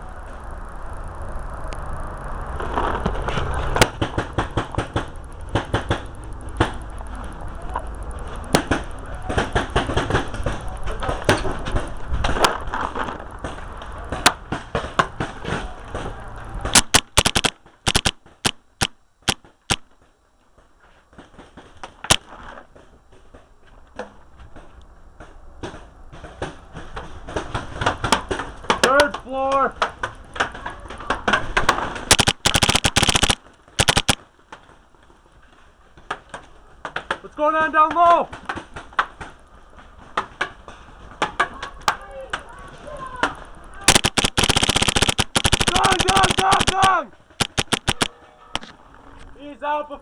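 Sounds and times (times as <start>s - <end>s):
paintball guns firing: 3.6s - 6.9s, 8.5s - 19.9s, 26.1s - 34.2s, 43.8s - 48.7s.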